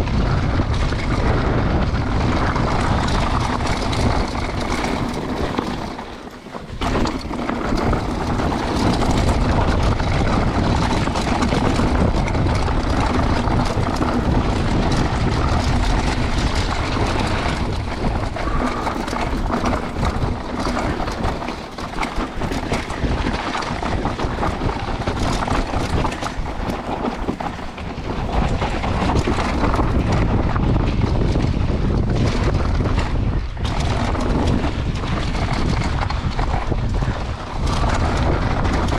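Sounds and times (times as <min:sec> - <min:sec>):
bike rattling over rough ground: 0:00.0 - 0:38.9
wind buffeting microphone: 0:00.0 - 0:38.9.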